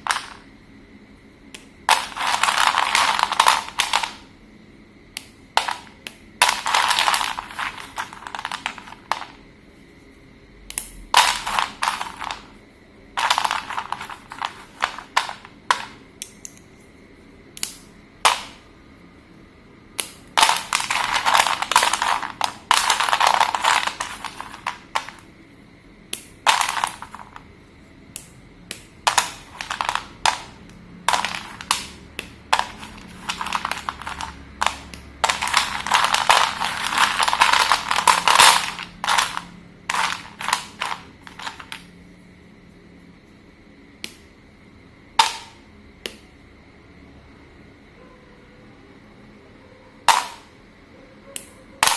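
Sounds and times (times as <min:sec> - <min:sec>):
slate pencils crunching: 0:01.9 - 0:04.3, 0:05.6 - 0:09.4, 0:11.2 - 0:12.6, 0:13.2 - 0:16.0, 0:20.0 - 0:25.3, 0:26.2 - 0:27.5, 0:28.7 - 0:41.8.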